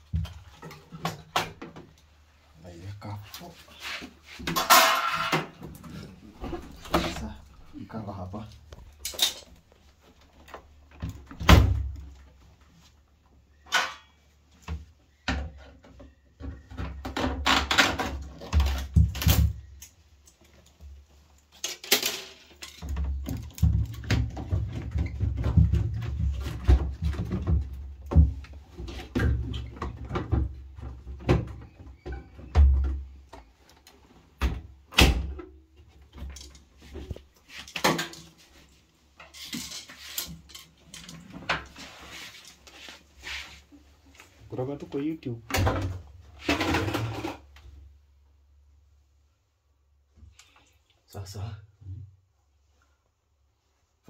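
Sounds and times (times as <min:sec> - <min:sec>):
tools clattering: 0:04.5 - 0:05.5, 0:09.0 - 0:09.6.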